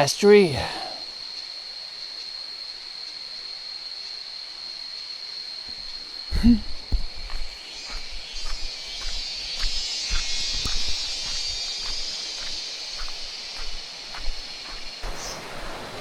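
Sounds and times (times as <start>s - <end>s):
cicadas droning: 0.0s - 16.0s
faint stream rushing: 6.9s - 16.0s.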